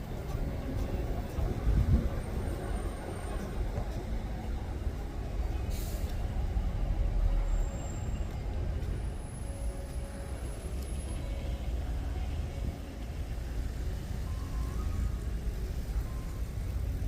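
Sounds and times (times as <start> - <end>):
road traffic rumble: 0.0 - 17.0
short hiss: 5.7 - 6.2.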